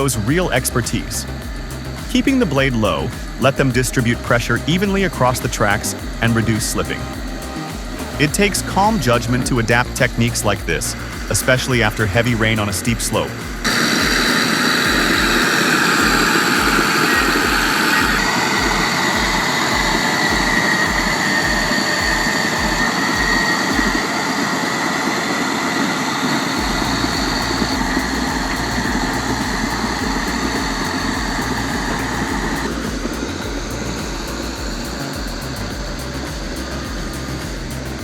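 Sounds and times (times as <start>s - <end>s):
heavy machine engine running: 0.0s - 38.0s.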